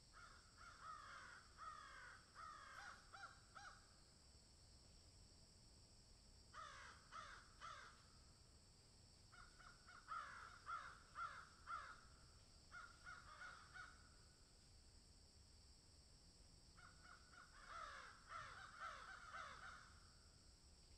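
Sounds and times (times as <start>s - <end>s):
crows cawing: 0.1s - 3.9s, 6.5s - 8.1s, 9.3s - 12.1s, 12.7s - 14.1s, 16.8s - 20.0s.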